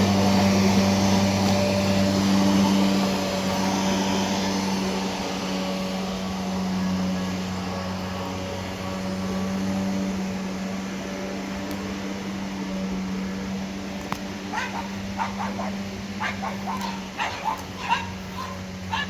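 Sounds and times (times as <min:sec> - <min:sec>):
pressure washer engine droning: 0:00.0 - 0:19.0
dog barking and yipping: 0:14.5 - 0:19.0.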